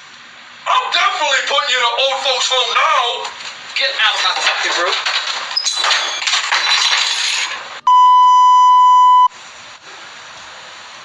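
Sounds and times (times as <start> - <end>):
steady beep tone: 7.8 - 9.3.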